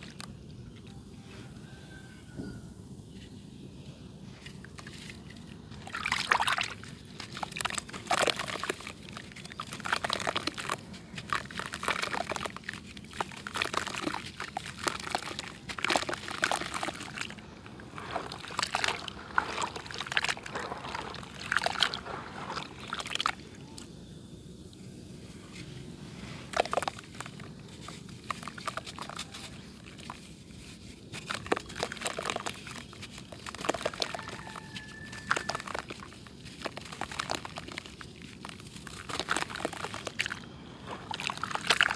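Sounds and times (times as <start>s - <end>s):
clay being crunched and crumbled: 4.3s - 23.9s, 25.4s - 41.9s.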